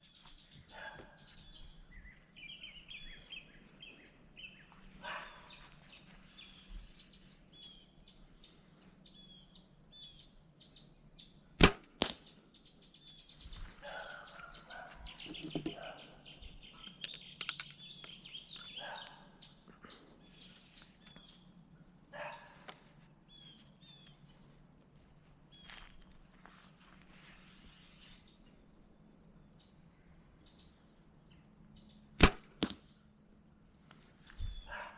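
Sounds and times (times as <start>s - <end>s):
small birds chirping: 0.0s - 24.6s, 25.4s - 34.9s
bow string crack: 11.6s - 12.3s, 32.2s - 32.9s.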